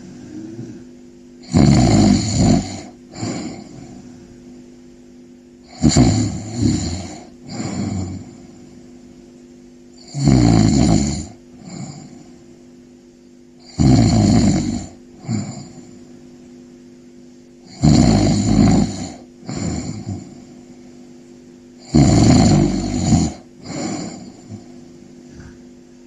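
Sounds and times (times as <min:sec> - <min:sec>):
person snoring: 0:00.0 - 0:04.4, 0:05.6 - 0:08.9, 0:10.0 - 0:12.4, 0:13.6 - 0:16.0, 0:17.6 - 0:21.0, 0:21.8 - 0:25.6
faint steady hum: 0:00.0 - 0:26.0.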